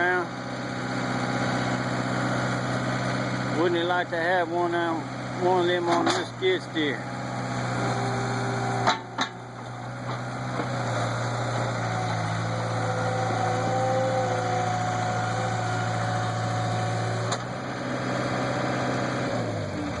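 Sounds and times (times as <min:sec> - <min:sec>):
skid steer engine running: 0:00.0 - 0:20.0
sharp knocks: 0:08.8 - 0:09.4.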